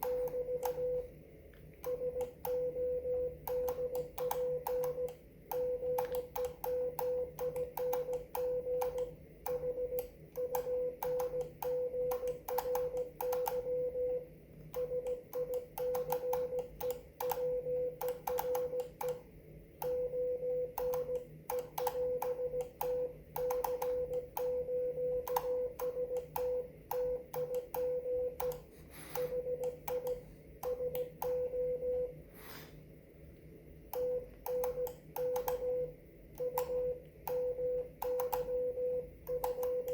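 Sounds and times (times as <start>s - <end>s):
morse code tone: 0.0s - 1.2s, 1.9s - 19.2s, 19.8s - 32.2s
faint low hum: 0.0s - 39.9s
keying clicks: 3.4s - 13.6s, 14.8s - 19.2s, 20.7s - 24.6s, 25.2s - 28.6s, 33.9s - 35.7s, 39.2s - 39.9s.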